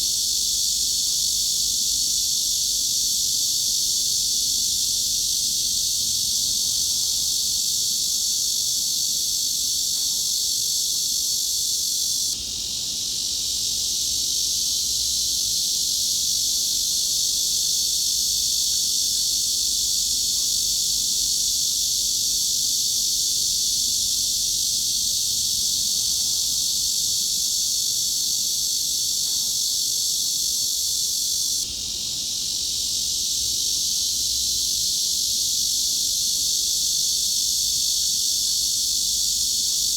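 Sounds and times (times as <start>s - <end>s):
cicadas buzzing shrilly: 0.0s - 39.9s.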